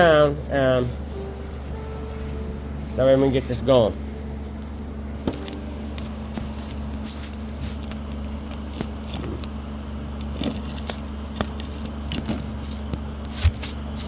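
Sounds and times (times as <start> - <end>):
electric sander humming: 0.3 - 7.1.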